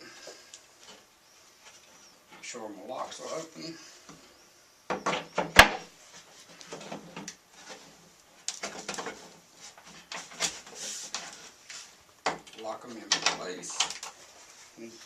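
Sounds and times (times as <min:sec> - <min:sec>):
wood knocking and scraping on wood: 0:04.9 - 0:15.0.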